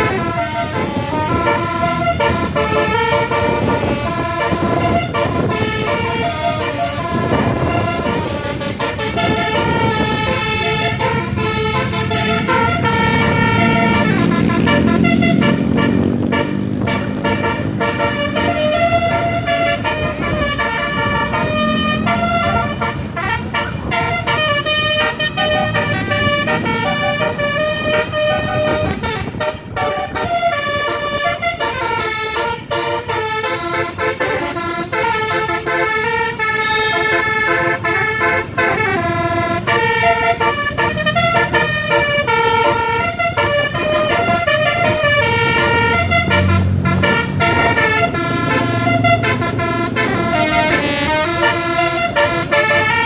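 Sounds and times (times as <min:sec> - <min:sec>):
multi-tone bus horn melody: 0:00.0 - 0:53.0.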